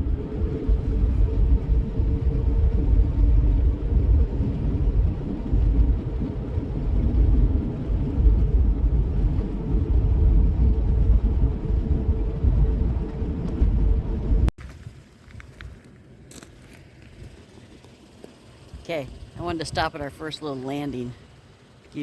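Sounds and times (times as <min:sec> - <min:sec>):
vehicle road rumble: 0:00.0 - 0:22.0.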